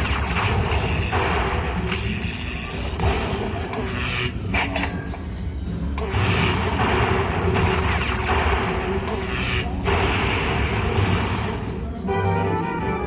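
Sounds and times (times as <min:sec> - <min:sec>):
slot machine booming sound effects: 0:00.0 - 0:03.8, 0:06.1 - 0:11.9.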